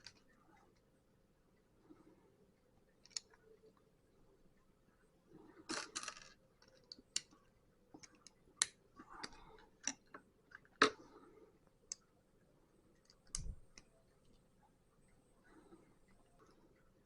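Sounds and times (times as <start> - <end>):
plastic bricks clicking and rattling: 5.7 - 7.4.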